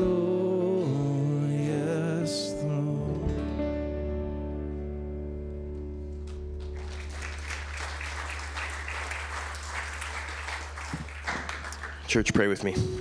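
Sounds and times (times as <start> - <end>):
congregation applauding: 6.2 - 12.3.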